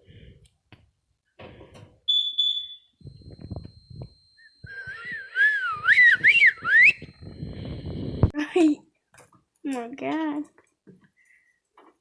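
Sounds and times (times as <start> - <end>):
faint steady high tone: 2.1 - 8.7
swooping whistled phrase: 4.7 - 7.1.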